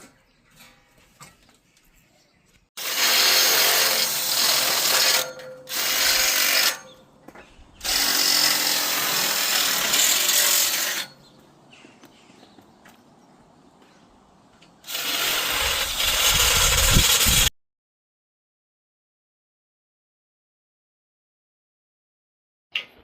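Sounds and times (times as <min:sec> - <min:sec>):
power drill running: 0:07.8 - 0:11.1, 0:14.9 - 0:17.5.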